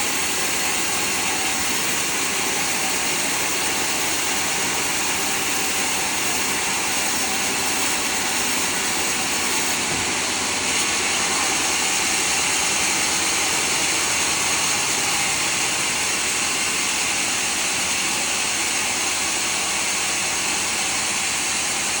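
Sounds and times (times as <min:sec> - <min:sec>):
sawmill saw cutting log: 0:00.0 - 0:22.0.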